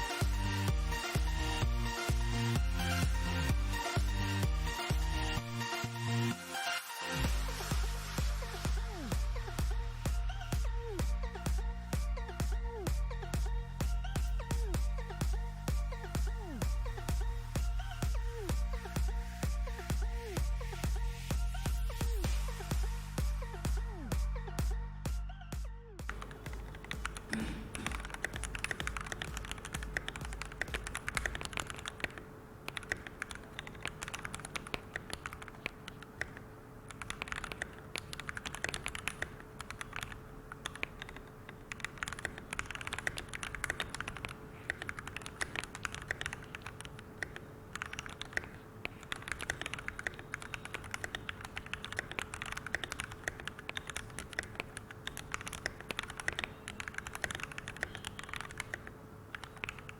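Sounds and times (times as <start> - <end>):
mechanical keyboard typing: 26.1 - 59.9.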